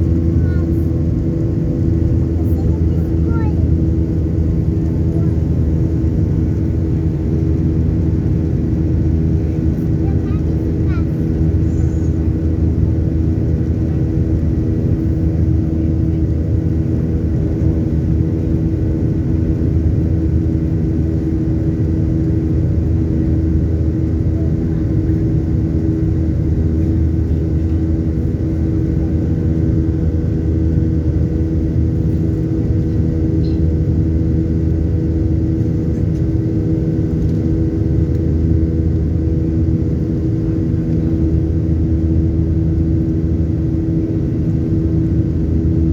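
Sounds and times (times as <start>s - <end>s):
jet engine drone in cabin: 0.0s - 45.9s.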